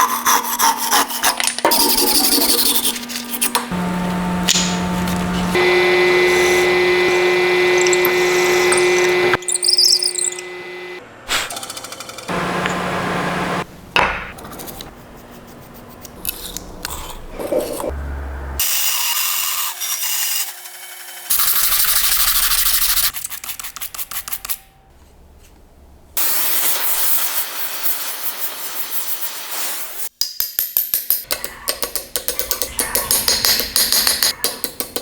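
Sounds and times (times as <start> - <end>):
rapid rubbing or sawing strokes: 0.0 - 3.7
power tool grinding: 0.2 - 13.6.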